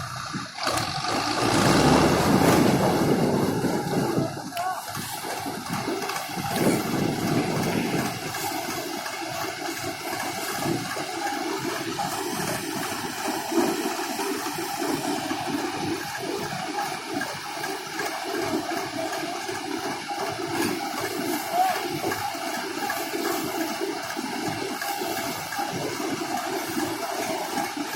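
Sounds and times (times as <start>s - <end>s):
combine harvester rushing noise: 0.0s - 27.9s.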